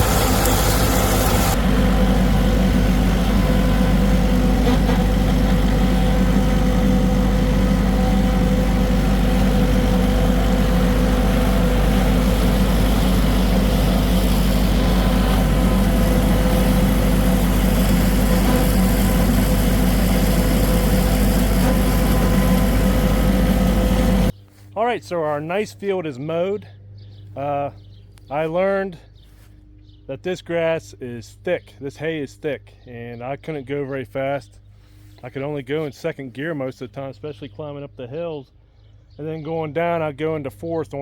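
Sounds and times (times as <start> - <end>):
tractor diesel engine running: 0.0 - 24.4.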